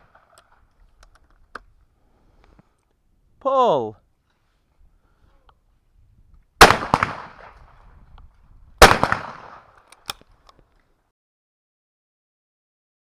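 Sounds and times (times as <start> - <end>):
shotgun shots with echo: 6.6 - 7.8, 8.8 - 9.8
small sharp clicks: 9.7 - 10.9.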